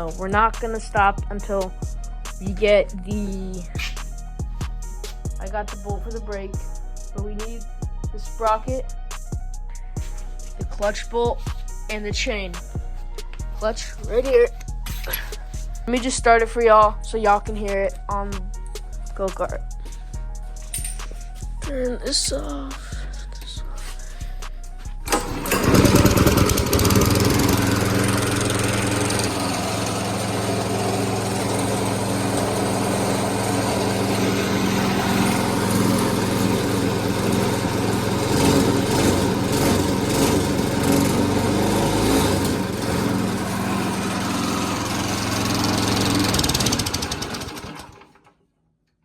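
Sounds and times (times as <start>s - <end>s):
small engine running: 21.7s - 48.3s.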